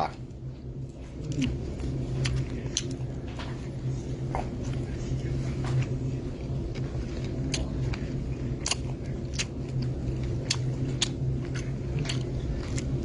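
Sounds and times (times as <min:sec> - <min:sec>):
low hum: 0:00.0 - 0:13.0
person chewing: 0:00.8 - 0:03.2, 0:04.2 - 0:13.0.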